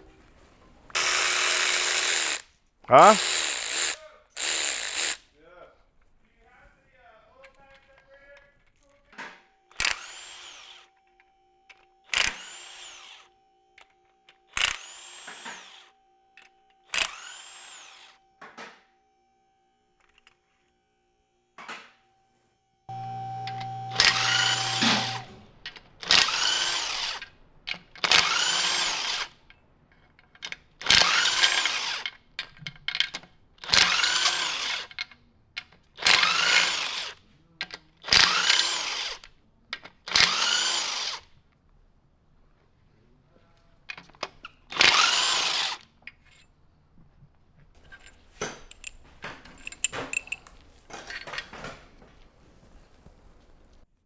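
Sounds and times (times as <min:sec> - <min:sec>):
power tool spinning up: 0:01.0 - 0:05.2, 0:09.8 - 0:11.0, 0:12.1 - 0:13.2, 0:14.6 - 0:15.9, 0:16.9 - 0:18.2, 0:22.9 - 0:29.4, 0:30.8 - 0:32.2, 0:33.6 - 0:35.0, 0:36.0 - 0:37.2, 0:38.1 - 0:39.2, 0:40.1 - 0:41.2, 0:44.8 - 0:45.8
metal clinks: 0:47.8 - 0:51.8.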